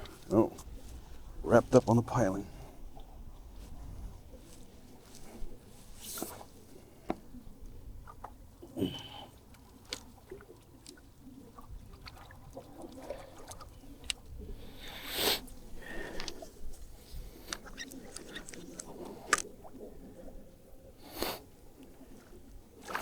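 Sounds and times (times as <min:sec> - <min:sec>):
fishing tackle clicks and rustles: 0:02.9 - 0:08.4, 0:15.4 - 0:20.4.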